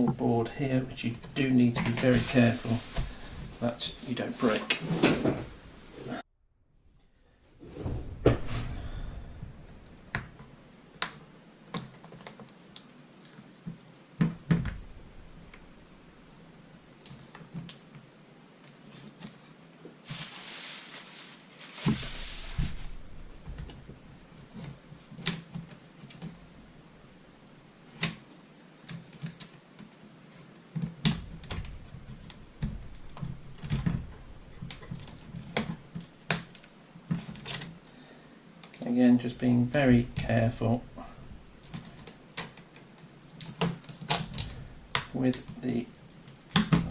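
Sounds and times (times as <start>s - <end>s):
handling rustle: 1.0s - 4.8s, 18.7s - 26.4s.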